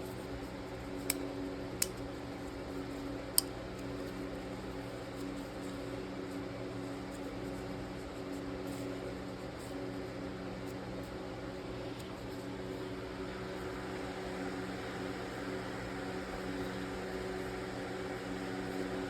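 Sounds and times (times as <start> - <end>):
mechanical hum: 0.0 - 19.0.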